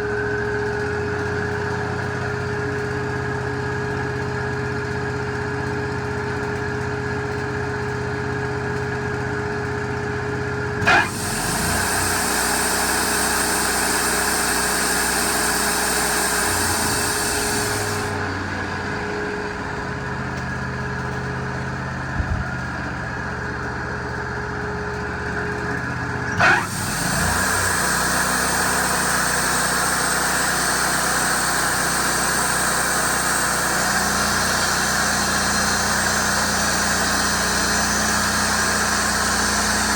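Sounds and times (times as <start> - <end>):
band sawmill engine running: 0.0 - 39.9
high saw hiss: 10.8 - 18.2, 26.4 - 39.9
loud saw sweep: 10.8 - 18.6, 26.4 - 39.9.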